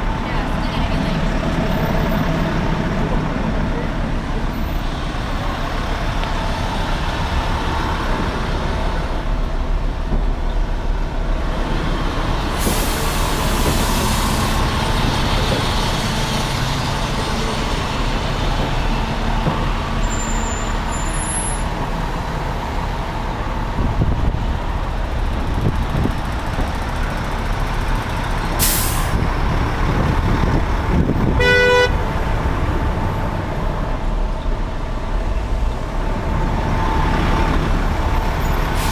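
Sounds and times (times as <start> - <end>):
diesel engines running: 0.0 - 38.9
air brakes hissing: 12.5 - 14.8, 28.6 - 29.2, 38.5 - 38.9
short horn toot: 31.4 - 32.0.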